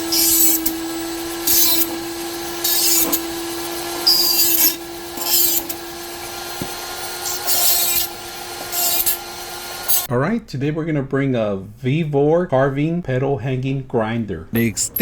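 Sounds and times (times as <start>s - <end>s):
grinding strokes: 0.0s - 10.1s
rotary grinder whine: 0.0s - 10.1s.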